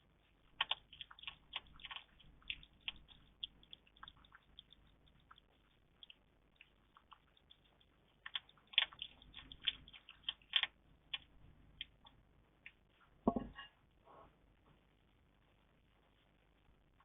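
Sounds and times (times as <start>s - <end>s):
small animal clicks and taps: 0.6s - 13.5s.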